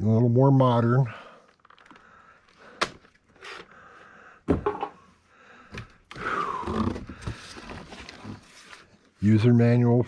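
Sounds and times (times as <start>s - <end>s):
knock: 4.5s - 5.0s.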